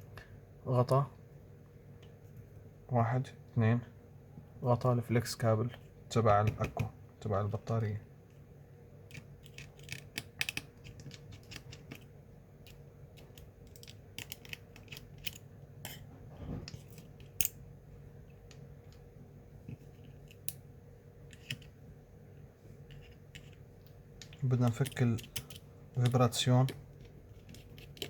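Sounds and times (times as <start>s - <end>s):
low steady hum: 0.0s - 28.0s
small metal tools clicking: 24.2s - 26.8s.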